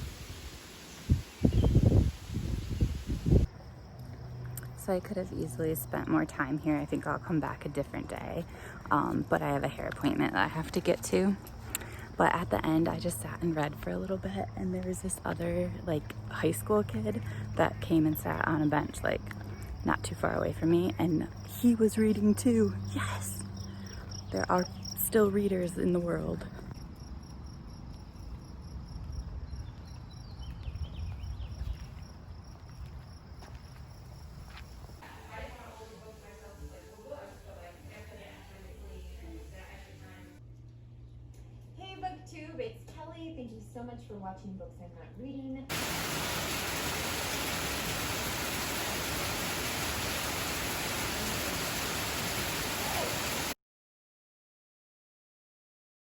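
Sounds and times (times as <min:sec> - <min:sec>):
steady white noise hiss: 0:00.0 - 0:03.5, 0:45.7 - 0:53.6
crickets trilling: 0:00.5 - 0:09.3, 0:11.5 - 0:35.1, 0:45.7 - 0:53.5.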